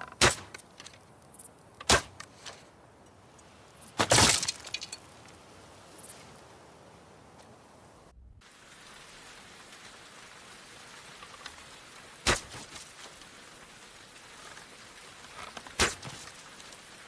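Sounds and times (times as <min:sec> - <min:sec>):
bow and arrow shot snapping: 0:00.0 - 0:00.9, 0:01.8 - 0:02.6, 0:12.2 - 0:12.9, 0:15.6 - 0:16.3
steady hiss: 0:00.0 - 0:17.0.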